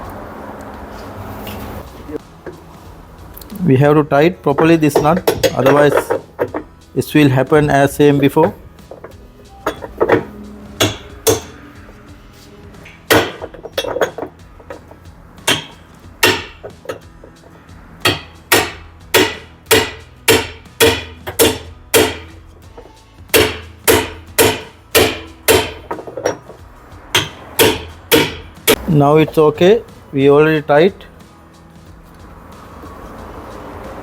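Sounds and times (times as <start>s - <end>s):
hammer striking a tool: 4.6s - 6.7s, 7.6s - 12.0s, 12.8s - 17.4s, 18.0s - 29.5s.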